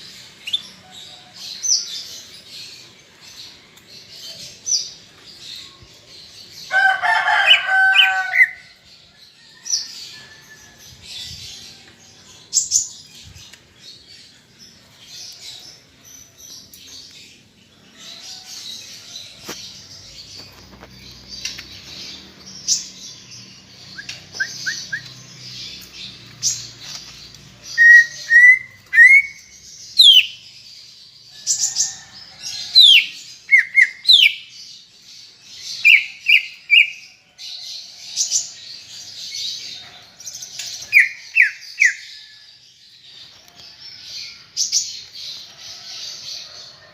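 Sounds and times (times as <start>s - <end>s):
bird singing: 0.0s - 46.9s
whistled bird notes: 24.0s - 25.2s.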